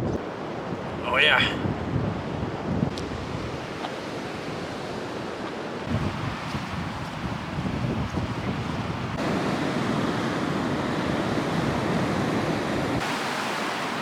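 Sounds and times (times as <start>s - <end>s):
strong wind buffeting microphone: 0.0s - 3.9s, 5.8s - 14.0s.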